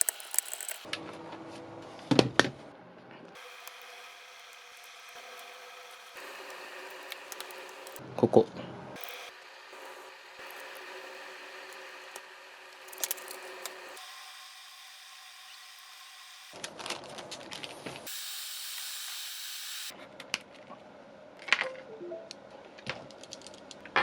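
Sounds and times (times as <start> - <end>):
heat gun blowing hot air: 3.4 - 8.0, 9.0 - 16.6, 18.1 - 19.9.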